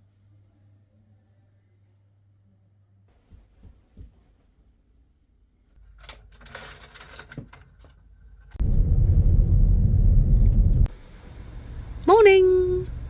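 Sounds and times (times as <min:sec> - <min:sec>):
loud low rumble: 0:08.6 - 0:12.0.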